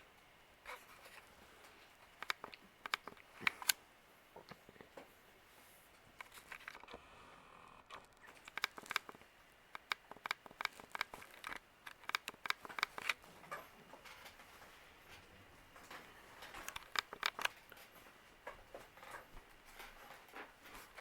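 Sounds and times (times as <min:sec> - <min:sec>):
small clicks and taps: 0:01.1 - 0:03.8, 0:07.9 - 0:14.5, 0:15.8 - 0:21.0.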